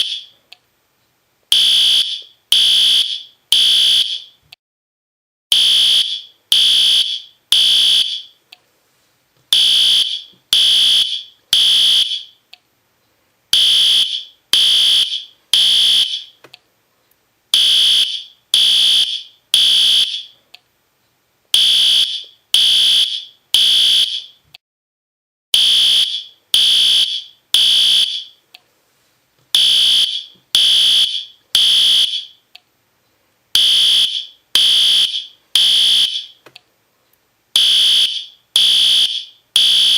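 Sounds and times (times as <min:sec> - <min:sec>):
fire alarm horn buzzing: 0:00.0 - 0:00.3, 0:01.5 - 0:04.4, 0:05.5 - 0:08.4, 0:09.5 - 0:12.4, 0:13.5 - 0:16.4, 0:17.5 - 0:20.4, 0:21.6 - 0:24.4, 0:25.6 - 0:28.4, 0:29.6 - 0:32.4, 0:33.6 - 0:36.4, 0:37.6 - 0:39.9.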